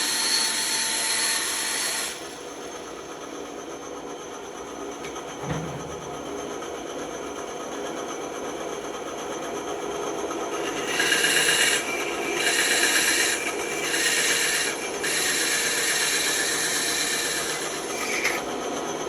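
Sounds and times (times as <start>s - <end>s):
blade cutting through wood: 10.6s - 18.4s
bandsaw running: 10.6s - 18.5s.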